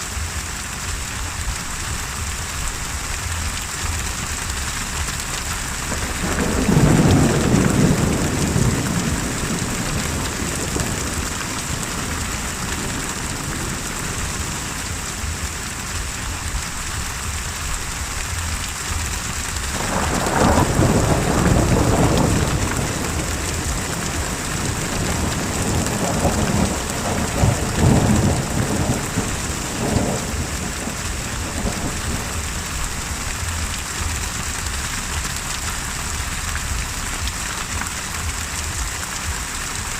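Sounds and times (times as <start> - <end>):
steady rain hissing: 0.0 - 39.9
thunder rolling: 5.8 - 15.4, 19.6 - 33.8.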